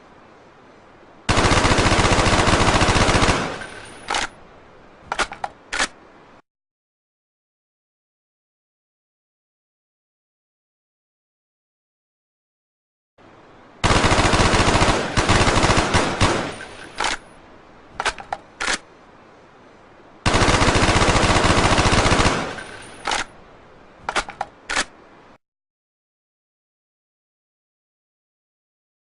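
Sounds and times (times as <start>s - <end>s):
automatic rifle fire: 13.8s - 17.2s.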